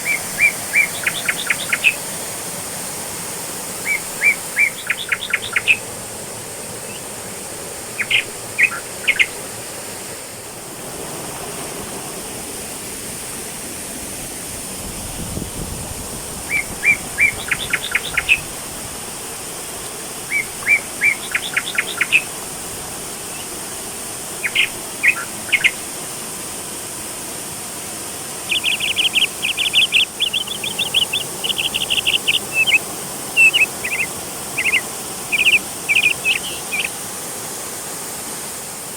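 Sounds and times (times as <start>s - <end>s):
waterfall rushing: 0.0s - 38.9s
bird singing high notes: 28.5s - 32.8s, 33.4s - 36.9s.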